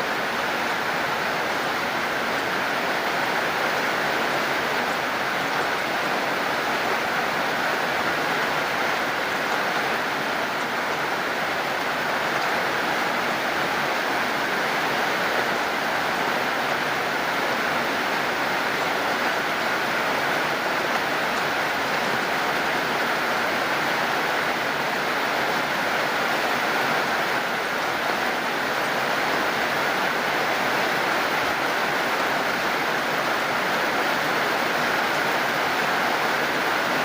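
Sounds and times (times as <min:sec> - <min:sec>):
heavy rain falling: 0:00.0 - 0:37.0.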